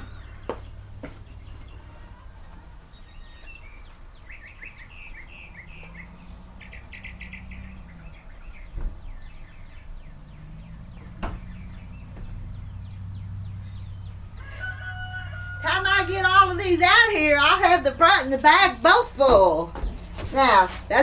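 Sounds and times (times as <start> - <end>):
small birds chirping: 0.0 - 21.0
steady low hum: 3.7 - 21.0
sharp knocks: 11.1 - 12.4.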